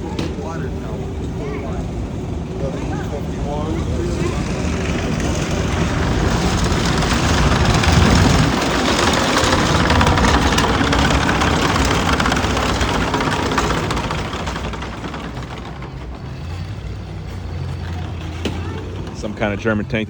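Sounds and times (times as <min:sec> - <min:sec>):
vehicle engine rumbling: 0:00.0 - 0:20.0.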